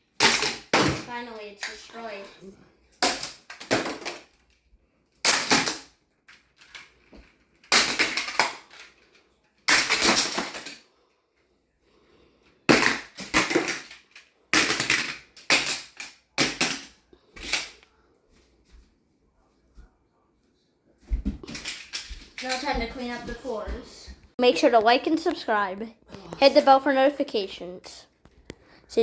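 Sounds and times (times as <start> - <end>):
plastic tiles clattering together: 3.0 - 4.5, 5.2 - 10.8, 12.7 - 17.8, 21.4 - 22.7.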